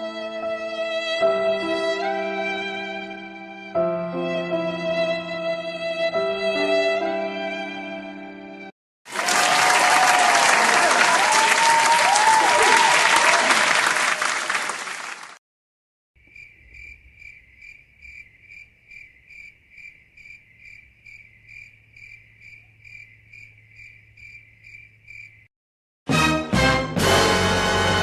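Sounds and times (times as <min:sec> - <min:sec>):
crowd whistling: 0:09.1 - 0:15.3
crowd applause: 0:09.1 - 0:15.4
cricket chirping: 0:16.2 - 0:25.5.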